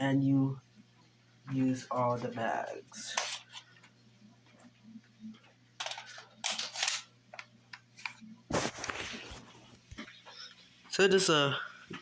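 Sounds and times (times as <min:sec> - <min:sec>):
plastic toy pistol clicks and rattles: 0:05.8 - 0:07.0.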